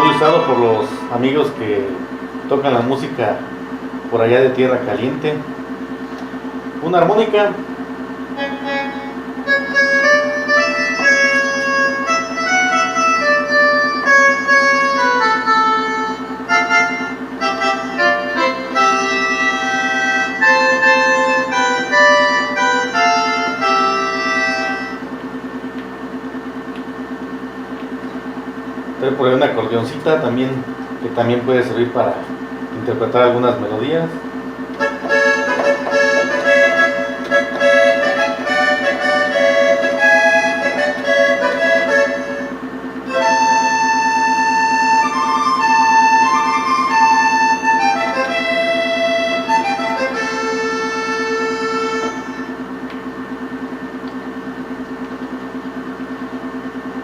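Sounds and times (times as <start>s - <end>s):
synthesizer reed melody: 0.0s - 2.2s
synthesizer accordion melody: 0.0s - 3.2s, 8.2s - 25.2s, 32.8s - 52.8s
low pulsing synth note: 0.0s - 3.6s.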